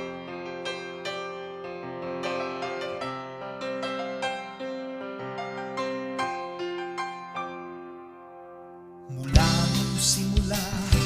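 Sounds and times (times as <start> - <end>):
solo piano chord: 0.0 - 9.3.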